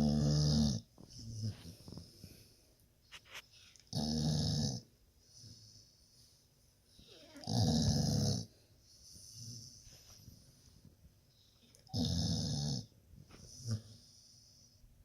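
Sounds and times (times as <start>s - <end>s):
loud snore: 0.0s - 0.8s, 7.2s - 8.5s, 11.9s - 12.9s.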